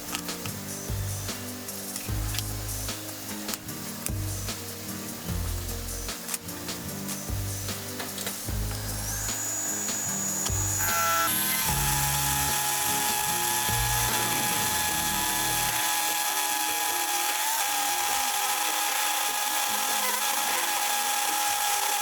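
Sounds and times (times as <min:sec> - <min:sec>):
background music: 0:00.0 - 0:22.0
electric motor high whine: 0:08.4 - 0:22.0.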